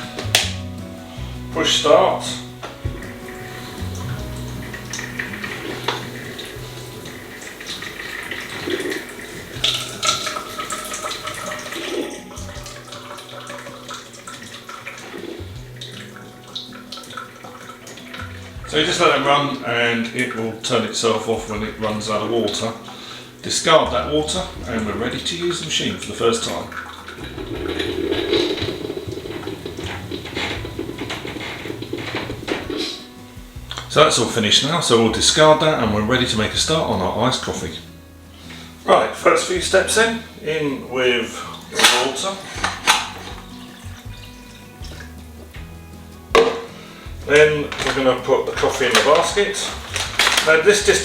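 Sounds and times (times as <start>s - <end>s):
water gurgling and splashing: 1.2s - 37.8s, 38.6s - 45.7s, 46.3s - 51.0s.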